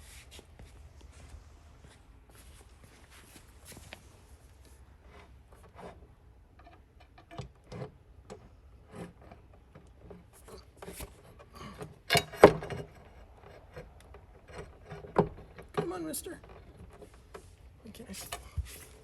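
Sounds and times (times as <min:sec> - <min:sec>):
metal parts clicking on wood: 0:05.1 - 0:17.4.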